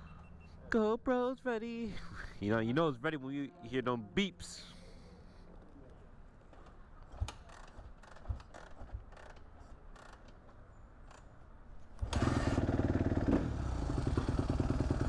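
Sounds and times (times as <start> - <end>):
light clicks and handling noises: 5.2 - 11.5
motorcycle engine starting and idling: 11.9 - 15.0.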